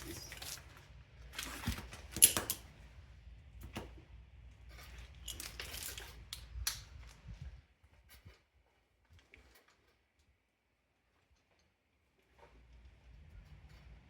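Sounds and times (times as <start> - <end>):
chain links clicking and rattling: 4.8 - 6.4.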